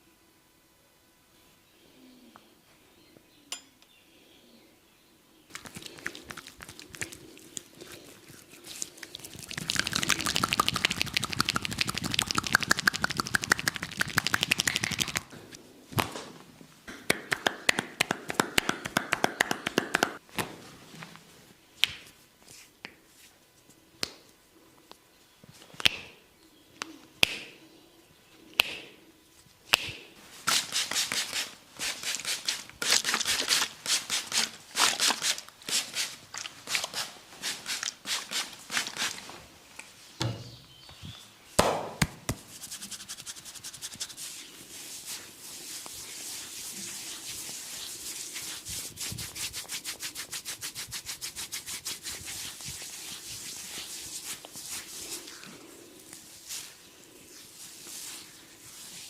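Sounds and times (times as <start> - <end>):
hands slapping skin: 5.5 - 7.2, 9.4 - 15.3, 16.9 - 20.5, 25.8 - 26.1, 26.8 - 27.5, 28.6 - 28.9, 29.7 - 31.5, 41.6 - 44.2
hands rubbing strokes: 5.5 - 15.4, 17.1 - 20.2, 29.7 - 40.0, 42.3 - 59.0.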